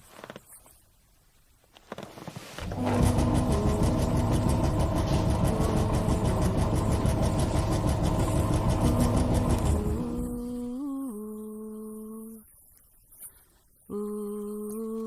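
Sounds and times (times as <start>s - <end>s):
engine-like pulsing rumble: 2.6s - 12.0s
steady hum: 2.6s - 12.4s.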